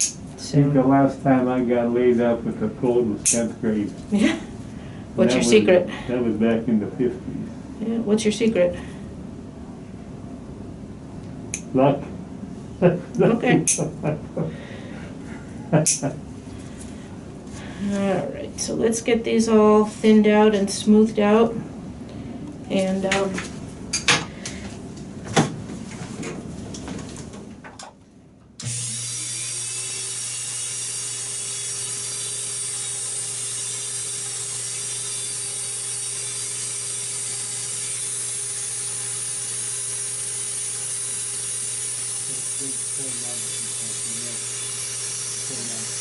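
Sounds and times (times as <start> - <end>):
electric nail drill running: 28.6 - 46.0.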